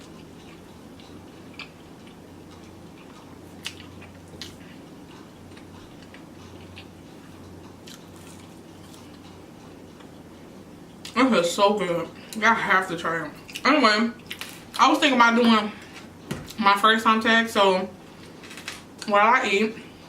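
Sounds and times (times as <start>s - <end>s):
person chewing food: 0.0s - 11.2s, 13.4s - 13.6s
steady low hum: 0.0s - 20.0s.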